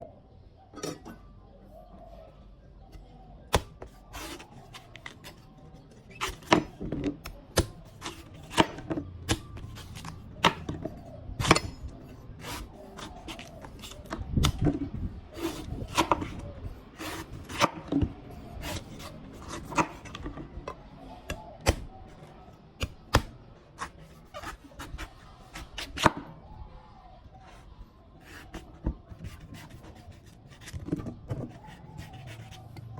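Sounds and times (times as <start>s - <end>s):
blade chopping coconut: 3.5s - 5.1s, 6.2s - 14.6s, 22.8s - 26.3s.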